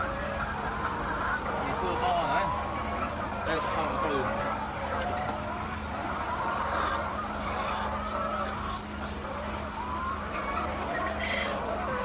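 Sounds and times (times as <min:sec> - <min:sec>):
hens calling: 0:00.0 - 0:12.0
steady low hum: 0:00.0 - 0:12.0.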